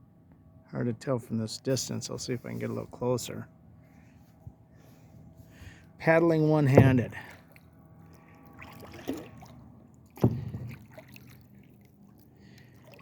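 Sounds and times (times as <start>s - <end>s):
kayak paddle dipping through water: 6.7s - 13.0s.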